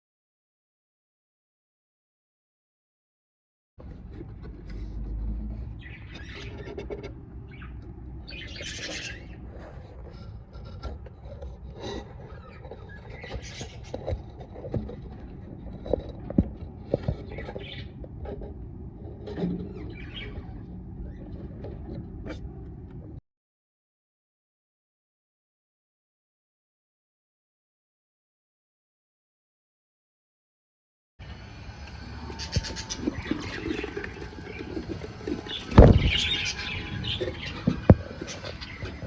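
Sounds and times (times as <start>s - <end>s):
budgerigars chirping and squawking: 5.7s - 9.5s, 12.2s - 14.1s, 17.3s - 17.9s, 19.7s - 20.5s, 32.2s - 39.0s.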